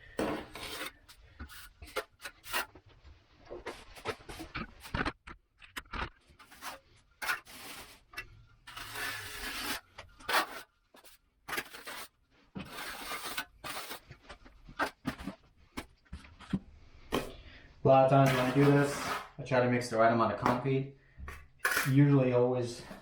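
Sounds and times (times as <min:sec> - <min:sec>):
trowel scraping wet mortar: 0:00.2 - 0:02.8, 0:05.8 - 0:15.3, 0:18.2 - 0:19.4, 0:21.6 - 0:22.1.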